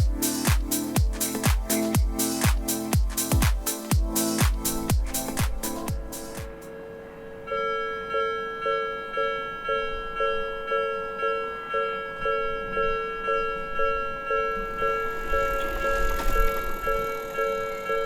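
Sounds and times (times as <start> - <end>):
level crossing warning bell: 6.6 - 18.0.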